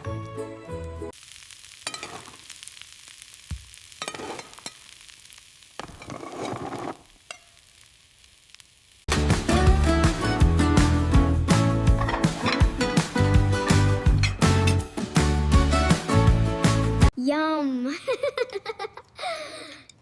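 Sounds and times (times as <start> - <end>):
music: 0.0 - 1.2, 9.1 - 17.1
food sizzling in a frying pan: 1.1 - 16.3.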